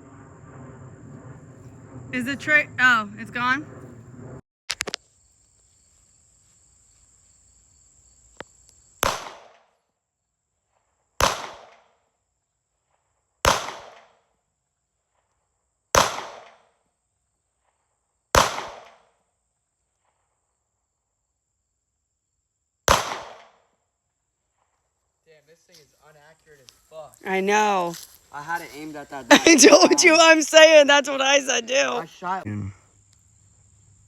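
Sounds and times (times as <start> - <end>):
gunshots with echo: 11.2 - 11.7, 13.5 - 14.0, 18.4 - 18.9, 22.9 - 23.4.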